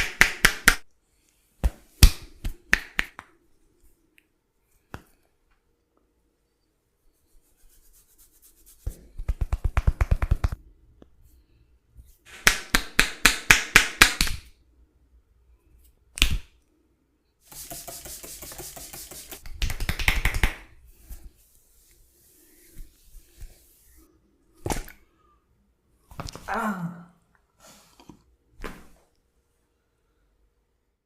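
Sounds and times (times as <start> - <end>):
brushing noise: 17.4 - 19.5
hands slapping and chopping taps: 17.5 - 20.6.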